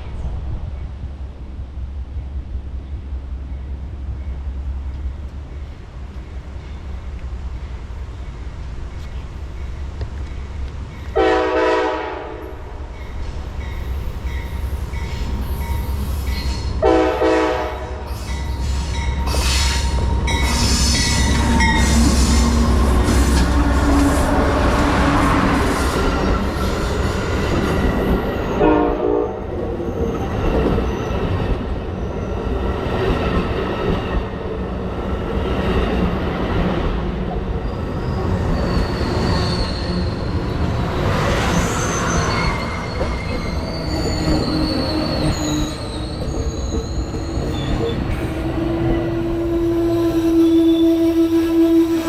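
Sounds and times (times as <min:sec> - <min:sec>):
train wheels rumbling on rail: 0:00.0 - 0:52.0
high-pitched wheel squeal: 0:37.8 - 0:40.6, 0:41.3 - 0:48.3, 0:48.9 - 0:52.0.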